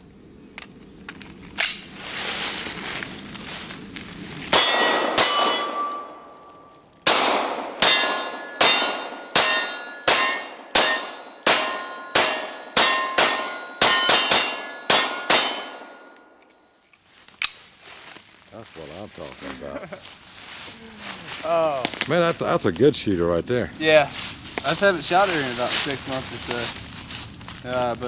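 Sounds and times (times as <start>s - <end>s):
pistol shots: 4.5s - 6.2s, 7.0s - 16.0s
steel plates clanging: 4.6s - 6.3s, 7.8s - 16.2s.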